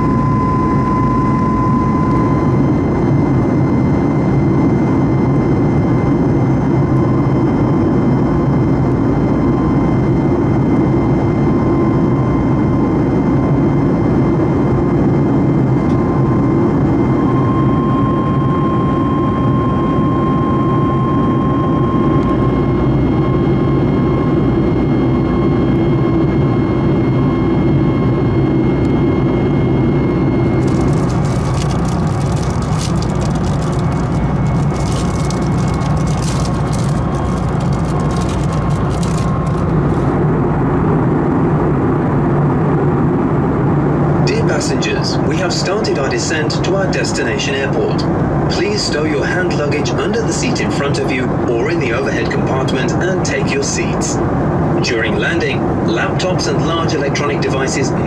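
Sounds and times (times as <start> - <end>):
thin jet engine whine: 0.0 - 8.7.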